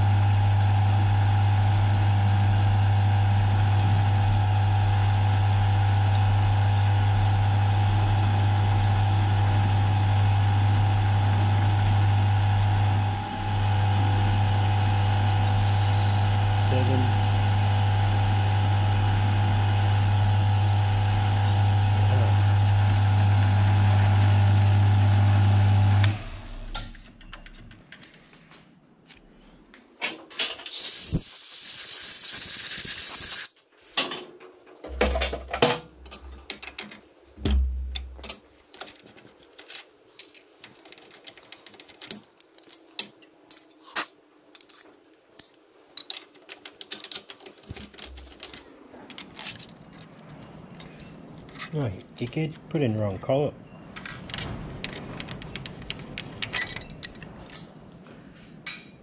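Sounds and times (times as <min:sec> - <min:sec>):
milling machine motor humming: 0:00.0 - 0:26.7
loud hiss: 0:15.4 - 0:18.5, 0:30.7 - 0:33.6
tools and parts clicking: 0:30.3 - 0:52.3, 0:54.0 - 0:57.9, 0:58.6 - 0:59.0.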